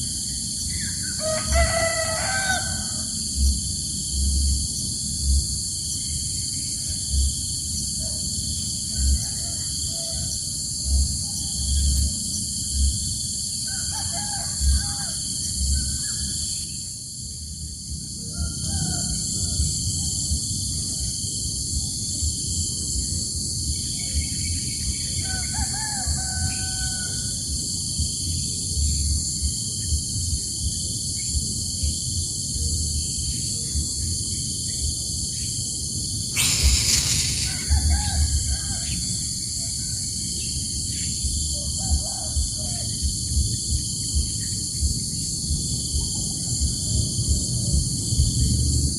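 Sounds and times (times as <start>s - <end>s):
high-pitched insect chorus: 0.0s - 48.9s
loud rustling burst: 36.4s - 38.0s
bird calls: 36.4s - 38.2s
wind thumping on microphone: 36.4s - 38.4s
wind on microphone: 41.3s - 48.9s.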